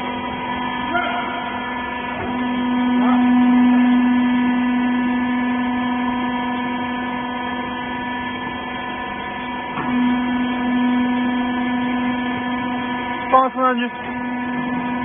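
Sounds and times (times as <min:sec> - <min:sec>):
hydraulic power unit humming: 0:00.0 - 0:15.0.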